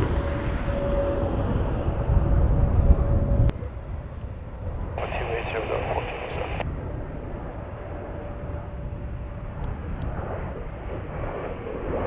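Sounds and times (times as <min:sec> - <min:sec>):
wind buffeting microphone: 0:00.0 - 0:12.0
air traffic control radio transmission: 0:05.0 - 0:06.7.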